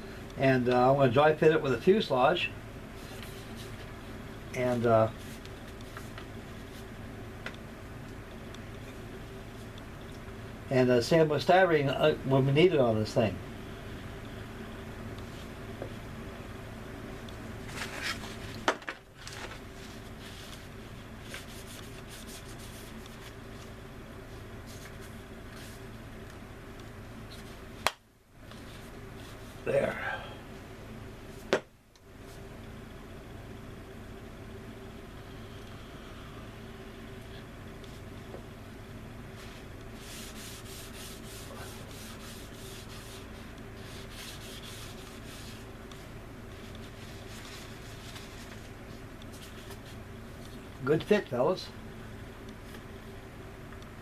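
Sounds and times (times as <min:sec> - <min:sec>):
low electrical hum: 0:00.0 - 0:54.0
hand sanding strokes: 0:21.3 - 0:23.3, 0:39.4 - 0:45.7.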